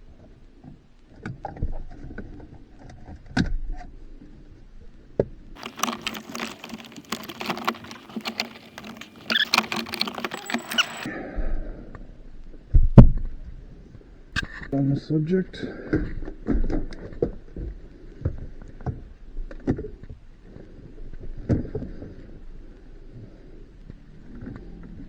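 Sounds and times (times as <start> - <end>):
dense rattling and clattering: 5.6 - 11.1
tools and plastic trim clicking: 5.6 - 11.1.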